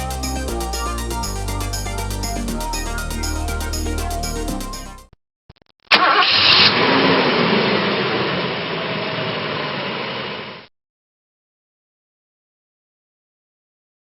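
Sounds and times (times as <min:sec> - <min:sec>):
background music: 0:00.0 - 0:05.1.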